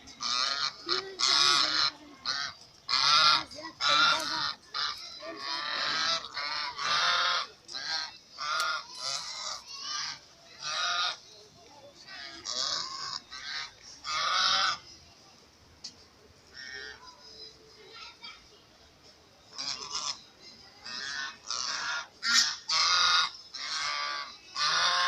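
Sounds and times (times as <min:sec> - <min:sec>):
geese honking: 0:00.1 - 0:11.2, 0:12.1 - 0:14.8, 0:16.5 - 0:17.0, 0:19.5 - 0:20.2, 0:20.8 - 0:25.0.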